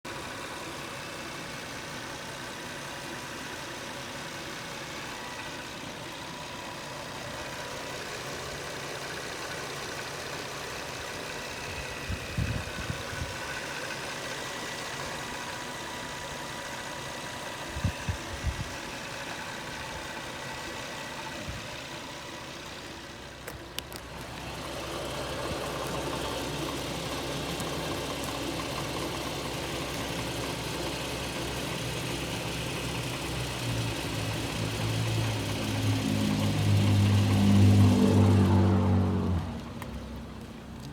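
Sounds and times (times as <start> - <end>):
car engine idling: 0.0 - 40.9
engine rattling knock: 23.4 - 38.2.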